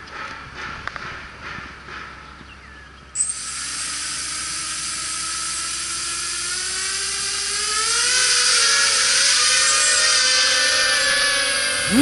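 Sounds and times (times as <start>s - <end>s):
quadcopter motors whining: 3.2s - 12.0s.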